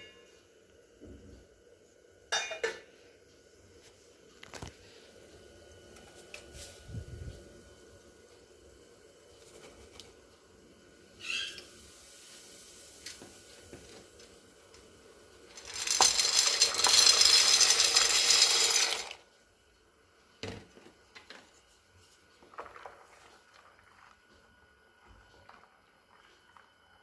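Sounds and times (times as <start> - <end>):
dishes clinking: 2.3 - 2.9.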